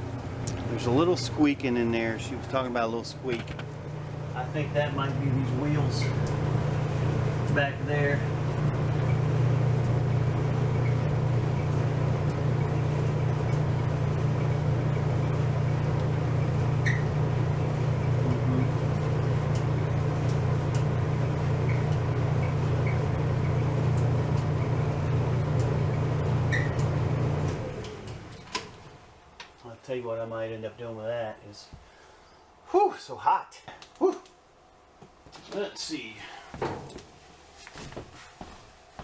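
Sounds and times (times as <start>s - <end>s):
clothes dryer humming: 0.0s - 29.6s
faint short squeaks: 16.8s - 17.4s, 26.5s - 27.0s.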